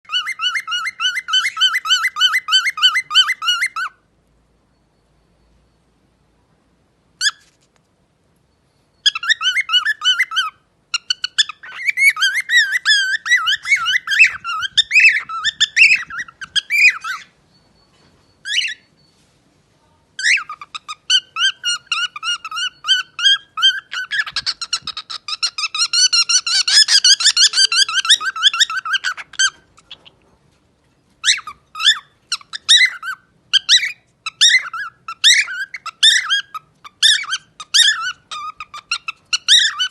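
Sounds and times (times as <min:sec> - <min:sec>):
parrot whistling and warbling: 0:09.0 - 0:17.3, 0:20.2 - 0:30.1, 0:31.2 - 0:39.9.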